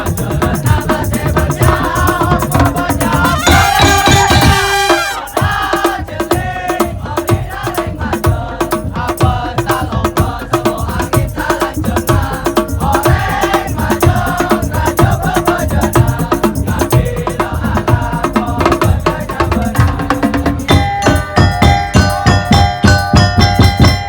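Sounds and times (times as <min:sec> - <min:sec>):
wood-block and drum percussion: 0:00.0 - 0:24.0
wavering melody: 0:03.3 - 0:05.3, 0:20.7 - 0:24.0
held keyboard notes: 0:03.4 - 0:05.3, 0:20.6 - 0:24.0.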